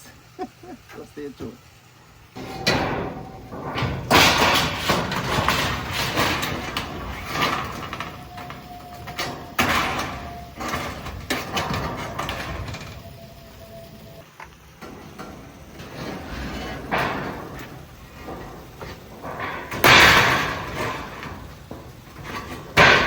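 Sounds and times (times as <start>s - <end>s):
knocks and bangs on timber: 2.4s - 12.4s, 18.5s - 23.0s
scraping of timber and tools: 2.4s - 13.8s, 14.8s - 23.0s.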